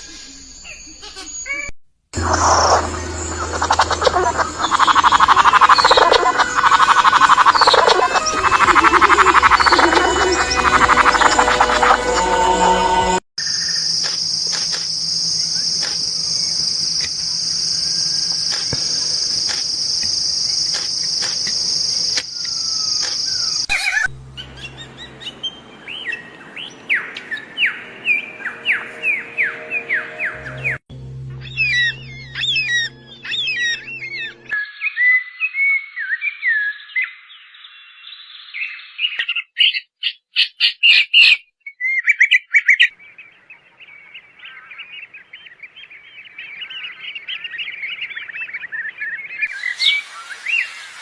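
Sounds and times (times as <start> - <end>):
high-pitched buzz: 2.2 - 13.2
birds chirping: 2.2 - 13.8, 31.4 - 35.1.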